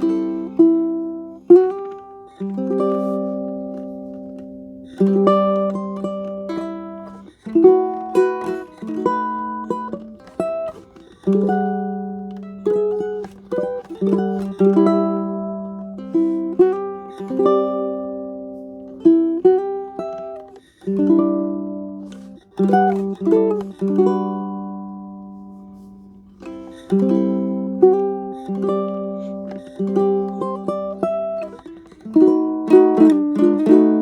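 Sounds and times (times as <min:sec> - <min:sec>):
fingerstyle plucked string instrument: 0:00.0 - 0:34.0.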